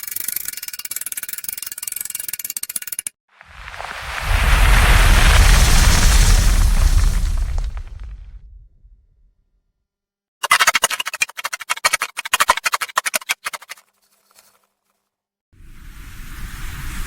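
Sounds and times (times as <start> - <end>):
rush of wind-like noise: 3.4 - 8.9
rapid sharp clicks and clatter: 10.4 - 13.8.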